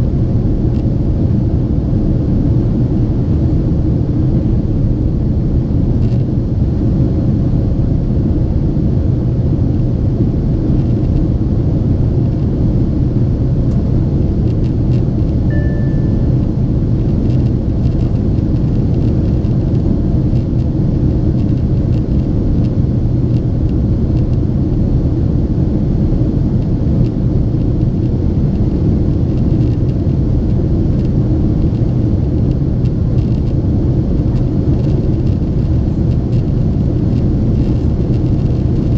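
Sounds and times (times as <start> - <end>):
airplane cabin engine rumble: 0.0 - 38.9.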